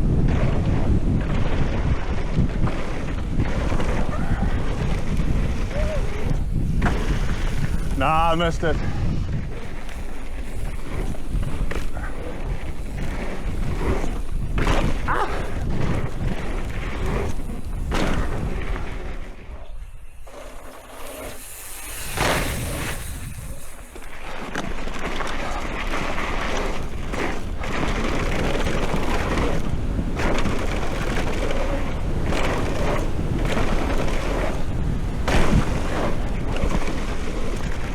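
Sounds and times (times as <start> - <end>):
bike tyre noise on dirt: 0.0 - 37.9
wind rumble: 0.0 - 37.9
sharp hiss: 20.8 - 24.1.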